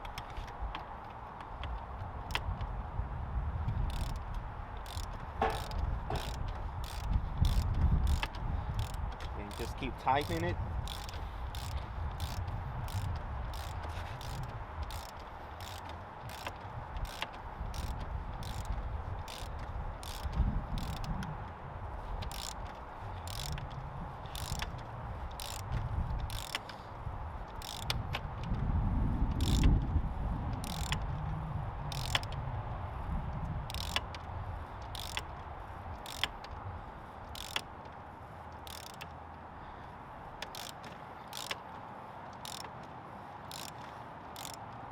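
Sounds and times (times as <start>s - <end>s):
ratchet wrench clicking: 2.2s - 2.6s, 3.8s - 21.3s, 22.0s - 26.9s, 27.5s - 28.2s, 29.3s - 29.8s, 30.6s - 31.1s, 31.8s - 32.4s, 33.7s - 36.5s, 37.2s - 39.2s, 40.4s - 41.7s, 42.4s - 44.8s.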